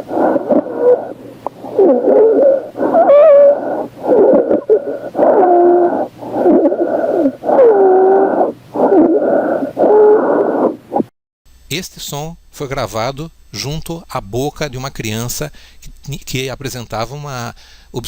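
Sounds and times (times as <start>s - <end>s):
child noisy breathing with pitched tone: 0.0s - 10.9s.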